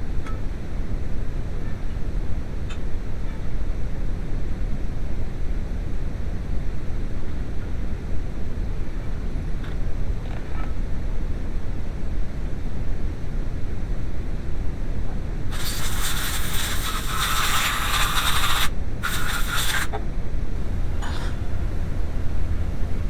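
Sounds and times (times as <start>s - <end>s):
pressurised spray hissing: 15.5s - 20.0s.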